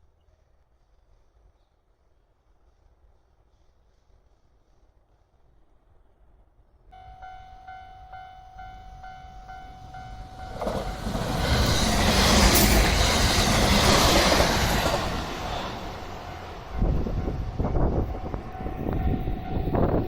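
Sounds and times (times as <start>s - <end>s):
level-crossing warning bell ringing: 6.9s - 12.9s, 16.1s - 20.0s
train wheels rumbling on rails: 8.6s - 20.0s.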